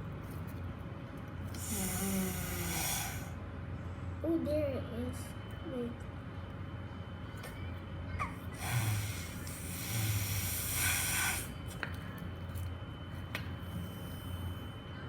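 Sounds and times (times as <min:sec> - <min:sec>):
breath blown through a straw: 0:01.6 - 0:03.4, 0:08.6 - 0:11.6.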